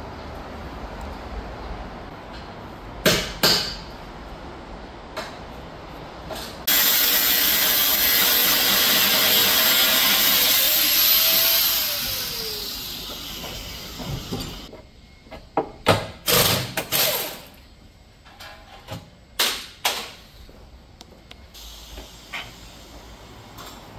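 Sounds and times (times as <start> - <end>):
power tool running: 6.7 - 14.7.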